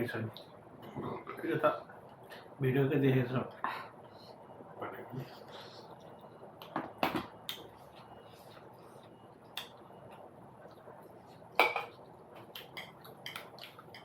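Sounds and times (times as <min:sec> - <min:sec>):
cutlery clinking against a dish: 0:11.6 - 0:14.0.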